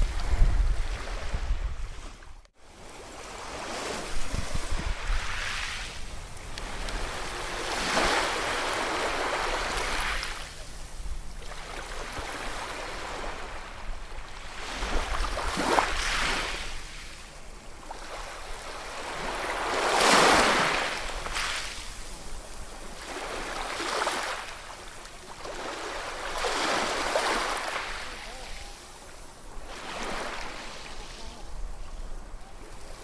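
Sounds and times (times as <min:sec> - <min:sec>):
ocean waves breaking on shore: 0:00.0 - 0:33.0.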